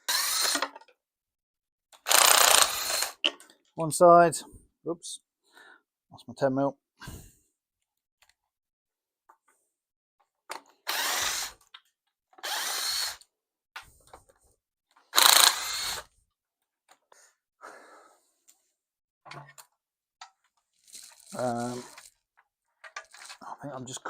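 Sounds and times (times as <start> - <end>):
power drill whirring: 0.0 - 0.7, 2.0 - 3.2, 10.8 - 11.7, 12.4 - 13.2, 15.1 - 16.1.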